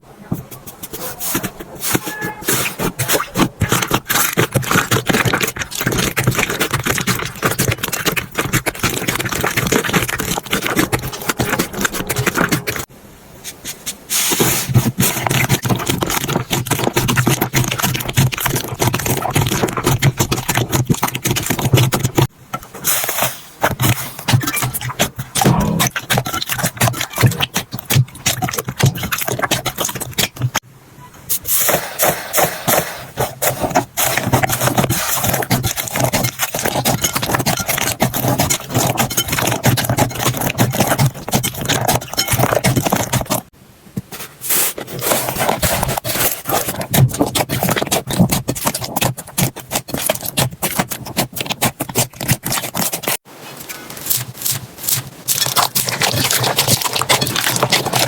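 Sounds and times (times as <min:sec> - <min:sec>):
slime squeezed wet crackling: 0:54.0 - 0:58.0.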